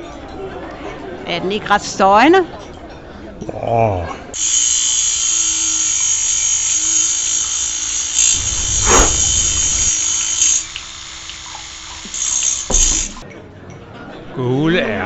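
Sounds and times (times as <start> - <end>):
high-pitched machine whirring: 7.7 - 12.6
thud: 8.4 - 10.3.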